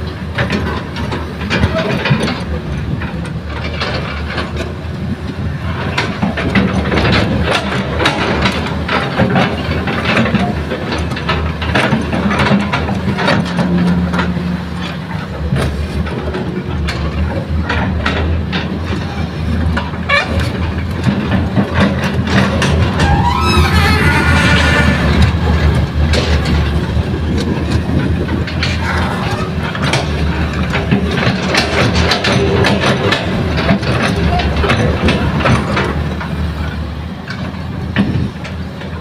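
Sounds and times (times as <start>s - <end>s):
excavator diesel engine running: 0.0s - 39.0s
machine knocks and clanks: 0.0s - 39.0s.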